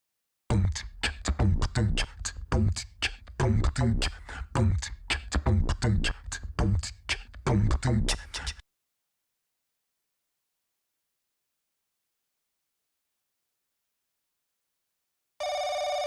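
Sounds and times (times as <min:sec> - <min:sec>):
beatbox-like bass beat music: 0:00.5 - 0:08.6.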